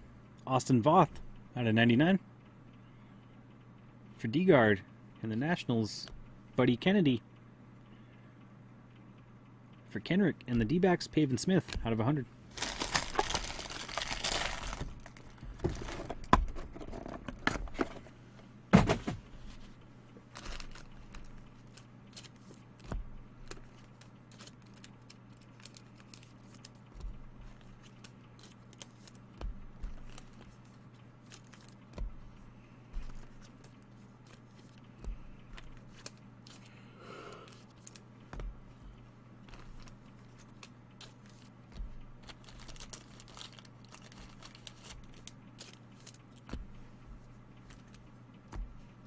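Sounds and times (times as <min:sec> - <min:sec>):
wrappers rustling and tearing: 0:12.5 - 0:16.3, 0:20.3 - 0:22.6, 0:23.4 - 0:29.2, 0:29.8 - 0:31.9, 0:37.5 - 0:38.0, 0:39.4 - 0:41.5, 0:42.2 - 0:46.6.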